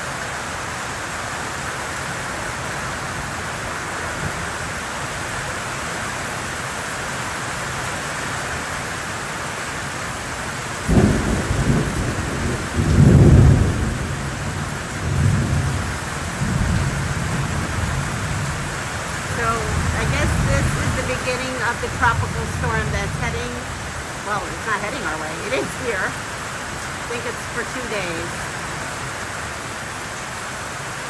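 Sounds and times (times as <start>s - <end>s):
heavy rain pouring: 0.0s - 31.0s
thunder rumbling: 10.7s - 29.2s.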